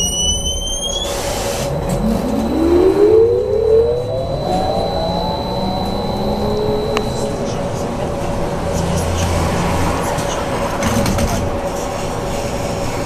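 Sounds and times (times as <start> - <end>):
high steady tone: 0.0 - 8.0
electric motor whining: 1.1 - 7.4.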